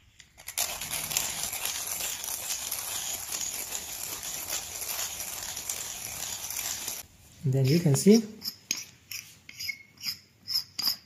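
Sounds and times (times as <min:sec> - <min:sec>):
manual coffee grinder crushing beans: 0:00.2 - 0:07.0.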